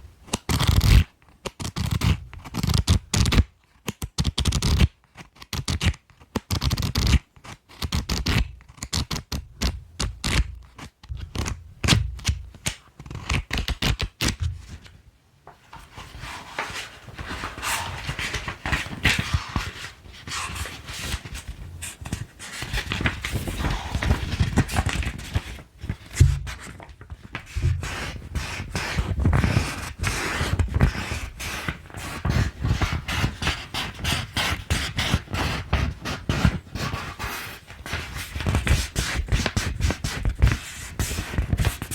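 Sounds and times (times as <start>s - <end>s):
colored pencils scratching paper: 15.8s - 26.8s, 27.5s - 41.9s.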